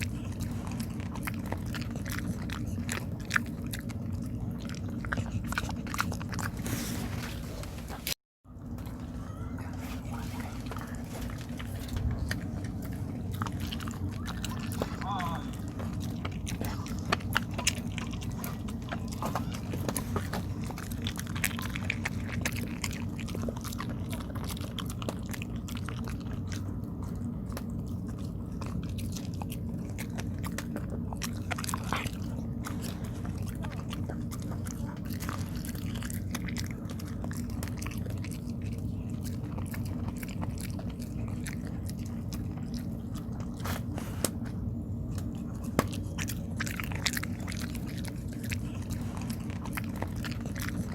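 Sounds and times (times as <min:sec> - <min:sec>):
dog chewing wetly: 0:00.0 - 0:50.9
low hum: 0:00.0 - 0:50.9.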